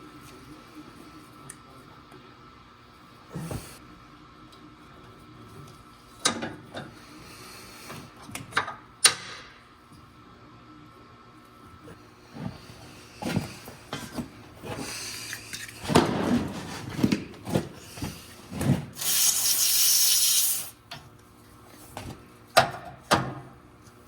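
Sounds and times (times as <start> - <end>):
steady hiss: 19.0 - 20.8.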